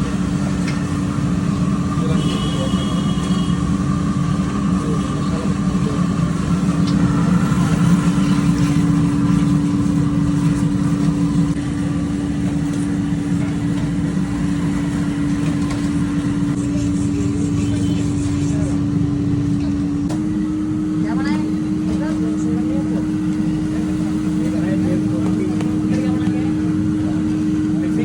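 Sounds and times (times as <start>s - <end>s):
machine hum: 0.0s - 28.0s.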